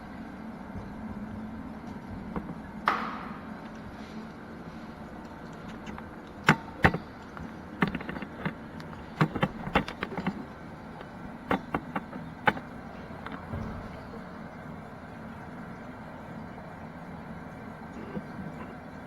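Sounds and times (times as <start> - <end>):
steady low hum: 0.0 - 19.0
sharp clicks and knocks: 5.5 - 18.8.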